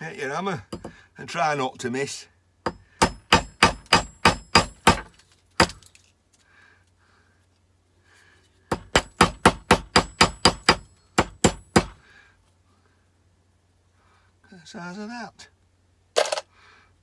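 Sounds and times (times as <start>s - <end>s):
hammer striking metal component: 0.7s - 1.0s, 2.7s - 5.9s, 8.7s - 12.0s.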